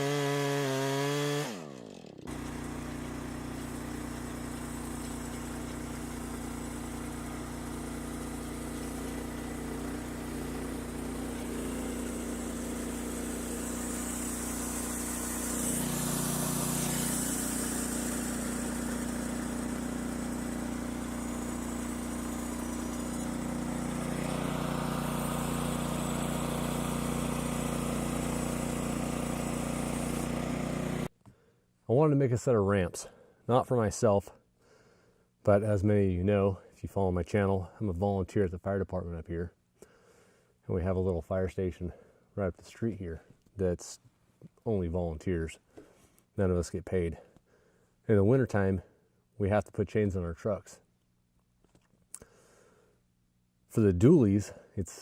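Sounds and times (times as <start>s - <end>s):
small gasoline engine running: 0.0s - 31.1s.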